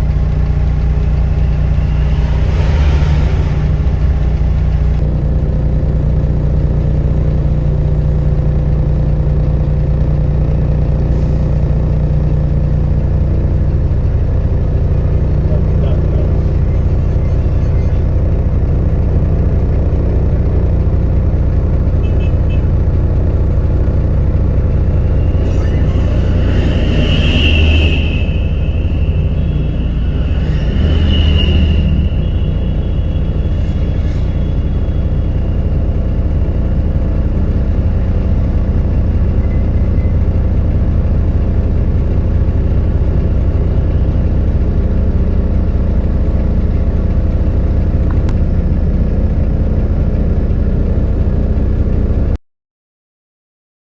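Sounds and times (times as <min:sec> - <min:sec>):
high-pitched squeal: 0:00.0 - 0:07.7, 0:11.2 - 0:48.6
diesel engine running under load: 0:00.0 - 0:52.4.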